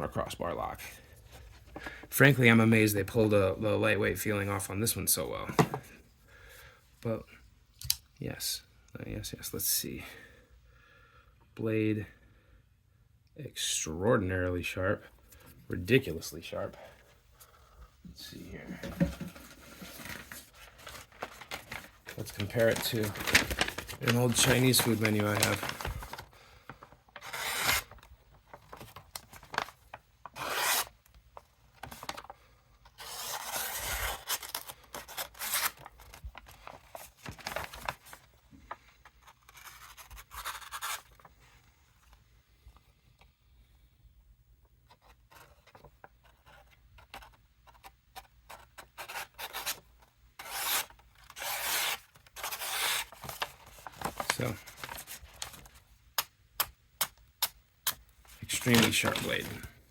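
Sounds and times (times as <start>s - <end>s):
paper rustling: 18.7s - 41.7s, 45.0s - 55.9s, 57.9s - 59.9s
knife slicing paper: 27.2s - 27.9s, 30.4s - 30.9s, 50.4s - 53.5s.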